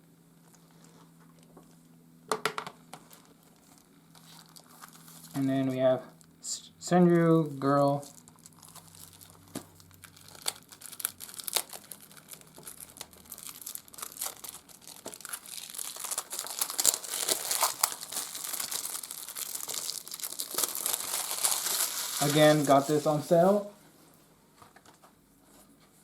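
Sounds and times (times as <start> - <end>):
plastic wrapping crinkling: 2.9 - 5.5, 7.9 - 23.6.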